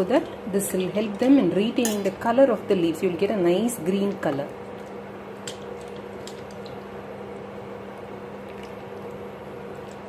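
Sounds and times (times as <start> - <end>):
wet squishing and splashing: 8.4 - 9.2.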